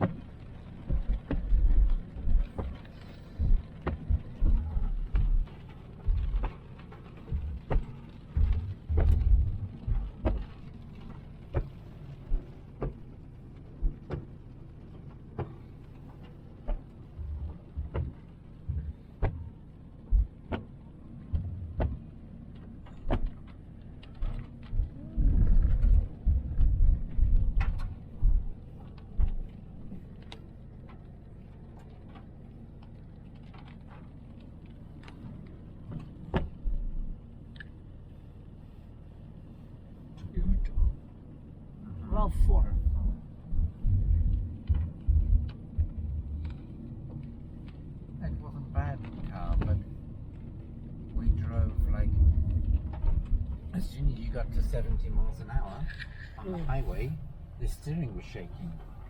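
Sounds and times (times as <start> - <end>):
car engine drone: 0.0 - 59.0
thumps from road bumps: 0.8 - 10.8, 11.4 - 13.1, 16.6 - 22.1, 22.8 - 30.1, 35.9 - 36.9, 42.8 - 46.6.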